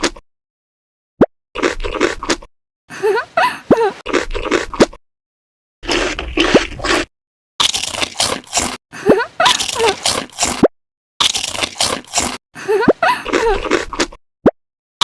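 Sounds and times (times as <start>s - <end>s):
wet squishy chewing: 1.6s - 2.5s, 4.1s - 5.0s, 5.8s - 8.8s, 9.4s - 12.4s, 13.3s - 14.2s
crunchy bites: 4.1s - 5.0s, 5.8s - 8.8s, 9.5s - 12.4s.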